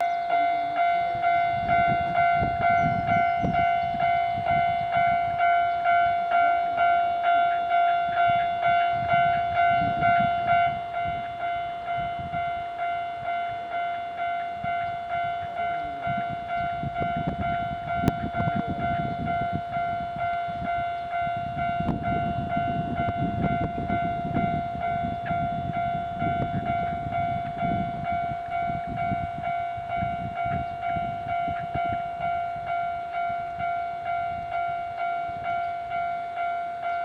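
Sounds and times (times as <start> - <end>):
level crossing warning bell: 0.0 - 37.0.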